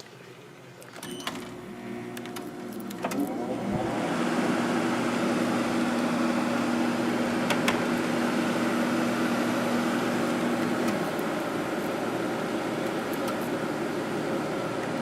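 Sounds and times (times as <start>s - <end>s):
air conditioner fan hum: 0.4s - 15.0s
air conditioner clicks: 0.9s - 3.4s, 5.4s - 12.0s, 12.7s - 13.6s.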